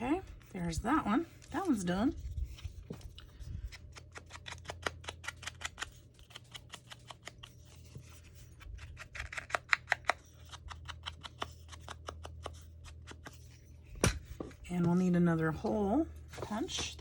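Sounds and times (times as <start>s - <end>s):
scissors snipping paper: 3.2s - 13.5s.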